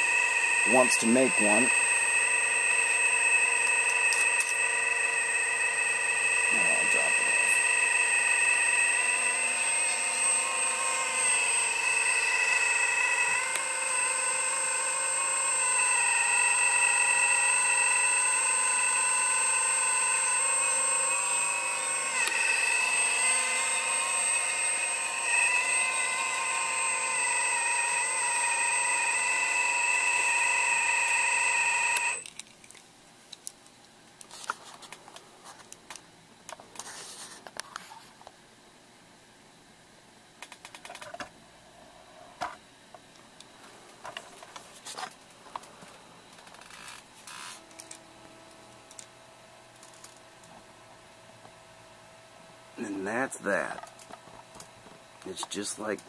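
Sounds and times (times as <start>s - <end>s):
hydraulic pump whining: 0.0s - 32.3s.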